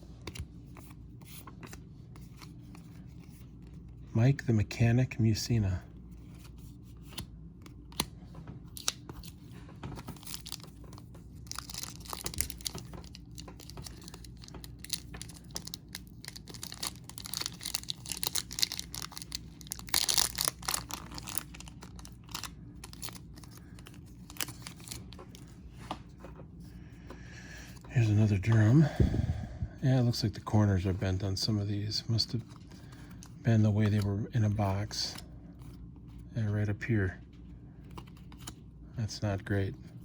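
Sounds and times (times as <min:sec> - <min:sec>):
wrapper tearing and crinkling: 0:10.2 - 0:10.8, 0:11.4 - 0:25.1.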